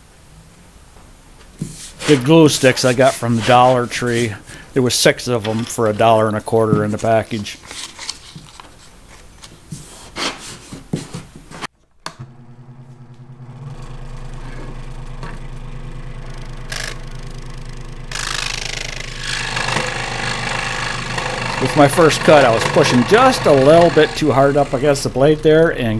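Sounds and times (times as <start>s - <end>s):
scroll saw running: 2.0s - 4.3s, 12.2s - 25.9s
saw blade rasping through wood: 18.2s - 25.9s.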